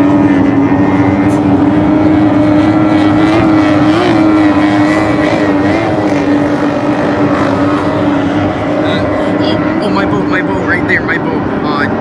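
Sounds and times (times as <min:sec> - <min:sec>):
racing boat engines droning: 0:00.0 - 0:12.0.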